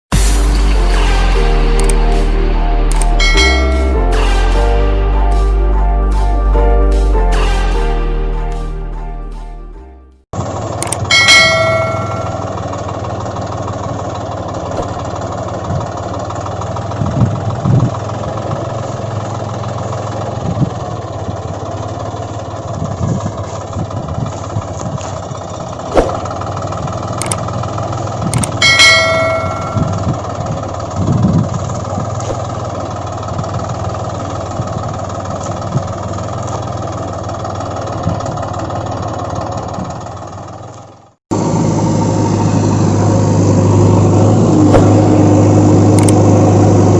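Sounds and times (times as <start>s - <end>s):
heavy vehicle engine running: 0.1s - 46.9s
knocks and clanks: 14.7s - 15.9s, 32.0s - 32.7s.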